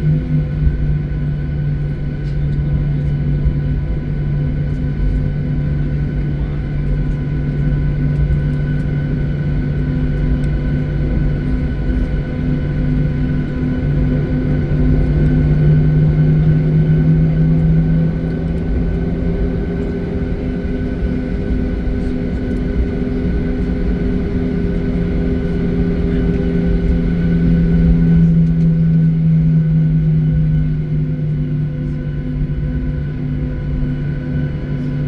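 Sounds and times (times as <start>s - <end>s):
jet engines drone in cabin: 0.0s - 35.0s.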